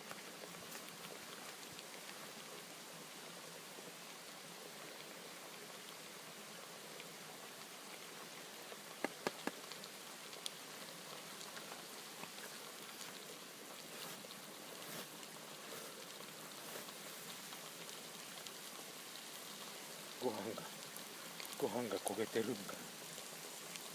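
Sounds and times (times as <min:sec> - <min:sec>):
meat sizzling in hot oil: 0:07.4 - 0:23.9.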